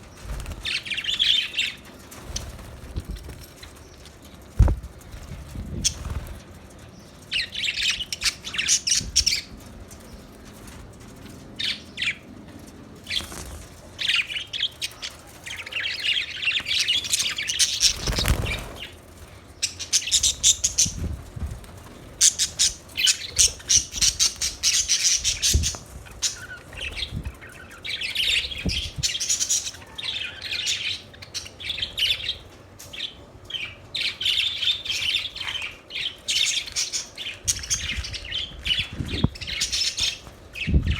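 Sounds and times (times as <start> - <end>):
budgerigars chirping: 22.2 - 32.4.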